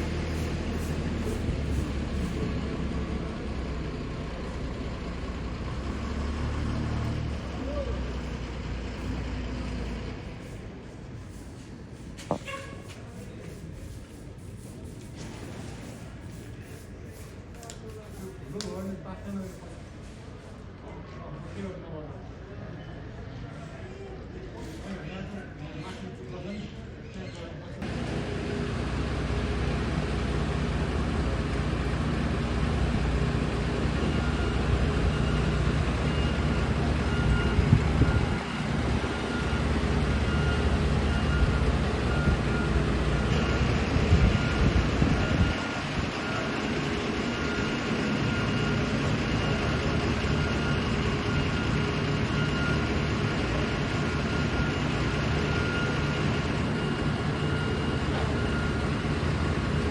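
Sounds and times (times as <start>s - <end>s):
vehicle engine running: 0.0s - 11.7s, 27.8s - 59.9s
reversing alarm beeping: 33.4s - 59.9s.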